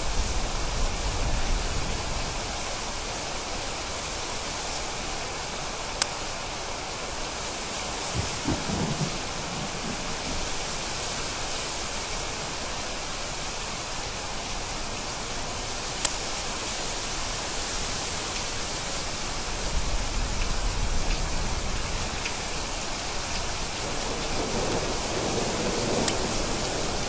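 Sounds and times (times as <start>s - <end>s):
heavy rain falling: 0.0s - 27.0s
distant thunder rumble: 7.8s - 12.5s, 19.6s - 27.0s.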